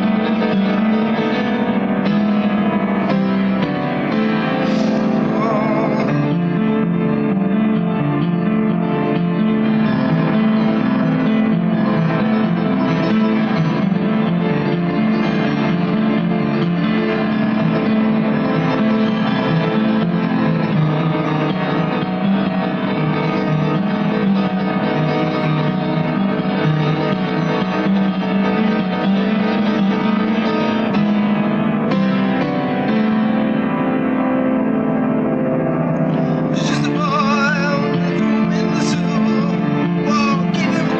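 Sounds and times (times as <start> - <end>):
guitar: 0.0 - 40.9
keyboard chords: 0.0 - 40.9.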